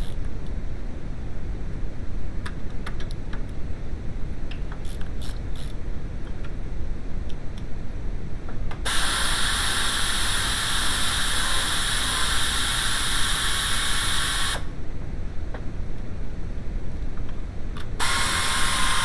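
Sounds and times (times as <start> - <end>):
low background rumble: 0.0 - 8.9, 14.6 - 18.0
spraying hiss: 8.8 - 14.7, 18.0 - 19.0.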